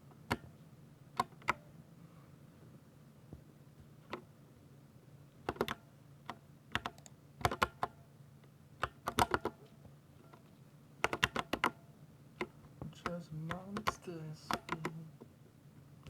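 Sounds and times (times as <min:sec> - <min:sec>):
mechanical keyboard typing: 0:05.4 - 0:05.9, 0:06.7 - 0:08.0, 0:08.8 - 0:09.6, 0:11.0 - 0:11.8, 0:12.4 - 0:15.0.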